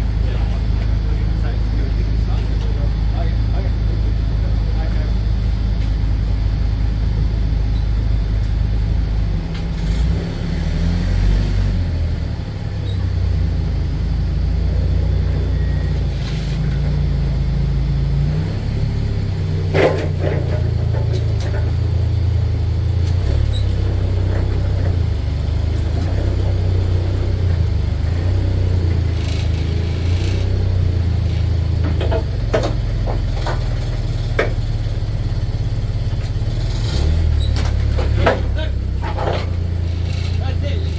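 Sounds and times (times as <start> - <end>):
truck engine revving: 8.2 - 40.9.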